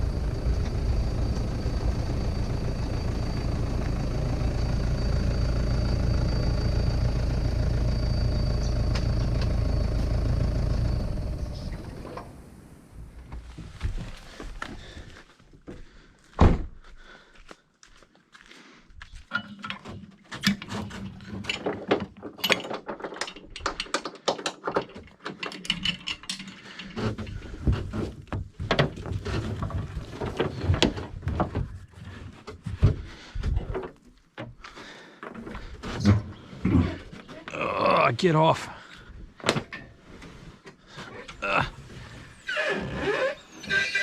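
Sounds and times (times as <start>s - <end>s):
loud thump: 16.4s - 16.7s.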